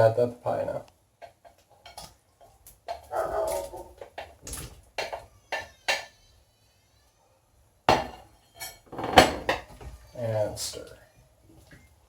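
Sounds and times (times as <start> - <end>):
knocks and clinks in a pot: 1.2 - 6.2, 7.9 - 9.9.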